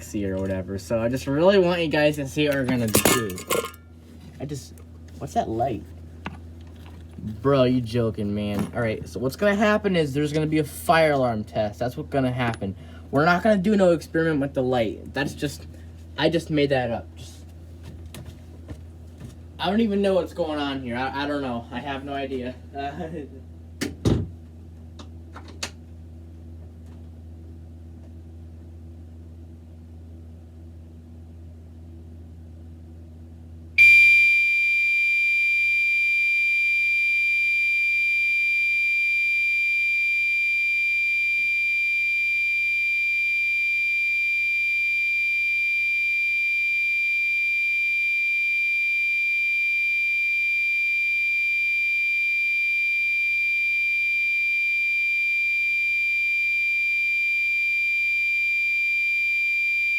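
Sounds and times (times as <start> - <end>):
low steady hum: 0.0 - 59.9
high-pitched fire alarm tone: 2.8 - 3.8, 33.8 - 59.9.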